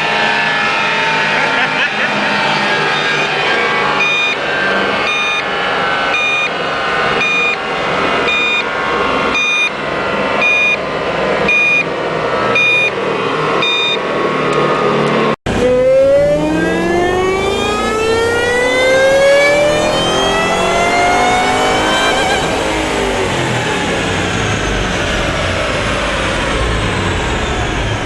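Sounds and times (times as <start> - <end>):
engine revving: 0.0 - 28.0
supercharger whine: 0.0 - 28.0
vehicle engine running: 0.0 - 28.0
short electronic beeps: 4.0 - 4.4, 5.0 - 5.5, 6.1 - 6.5, 7.2 - 7.6, 8.3 - 8.7, 9.4 - 9.8, 10.4 - 10.8, 11.5 - 11.9, 12.6 - 13.0, 13.6 - 14.0.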